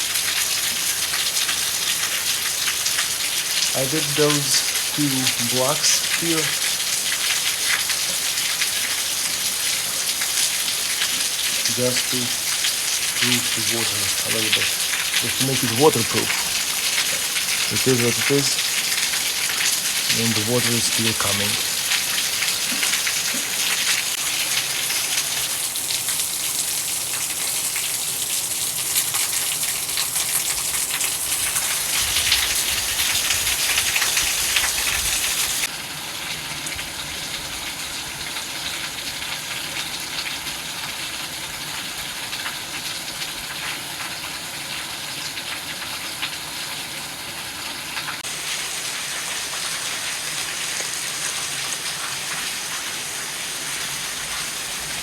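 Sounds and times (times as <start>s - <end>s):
heavy rain pouring: 0.0s - 55.0s
water gushing and splashing: 2.7s - 24.8s.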